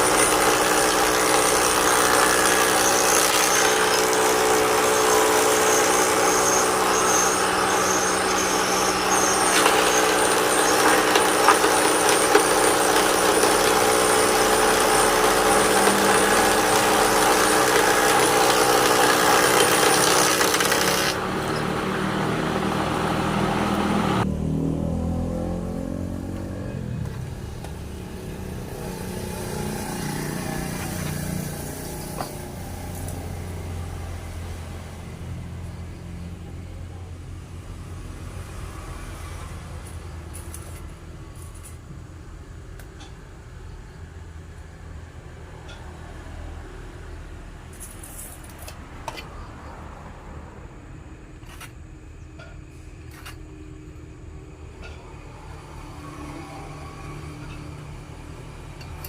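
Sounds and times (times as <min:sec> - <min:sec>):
motor winding down whine: 0:00.0 - 0:24.3
power tool cutting wood: 0:00.0 - 0:24.3, 0:27.6 - 0:35.1.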